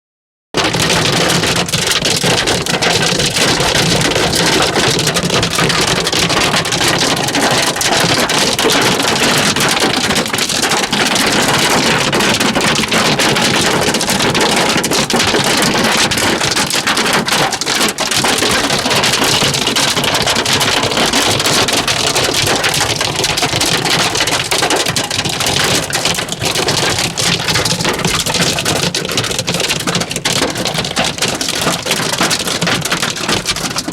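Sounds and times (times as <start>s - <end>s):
hail pelting down: 0.6s - 33.9s.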